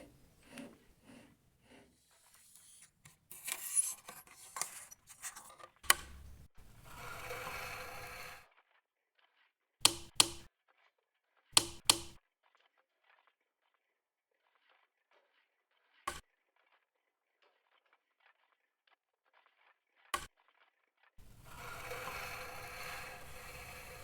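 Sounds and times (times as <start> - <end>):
rustling and scraping: 0.0 - 8.4, 21.2 - 24.0
parts clicking into place: 2.4 - 6.4, 9.8 - 10.5, 11.6 - 12.2.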